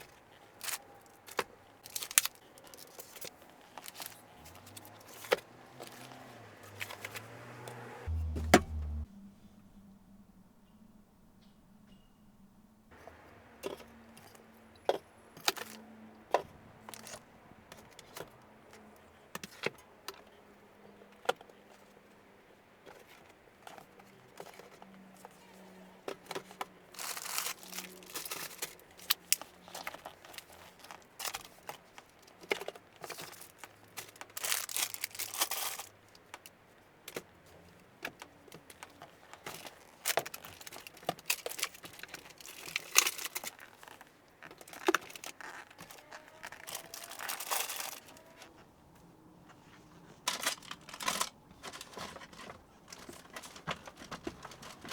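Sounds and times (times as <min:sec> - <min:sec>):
rustling and crinkling: 0:00.0 - 0:09.9, 0:12.9 - 0:54.9
faint low hum: 0:02.5 - 0:15.3.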